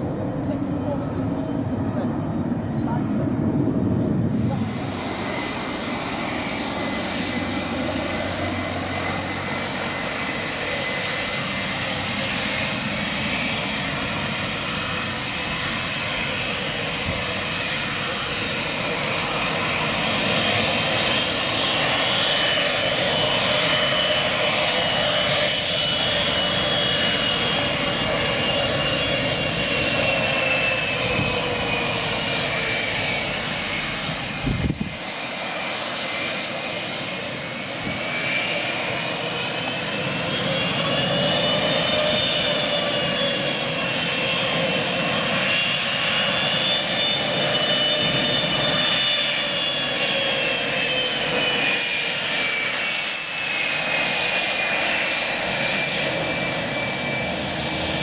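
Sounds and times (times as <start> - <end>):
airliner engines roaring: 0.0 - 58.0.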